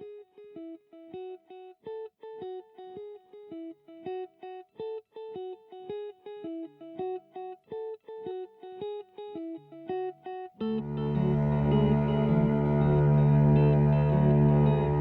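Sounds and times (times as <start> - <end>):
guitar picking quick melody: 10.6 - 15.0.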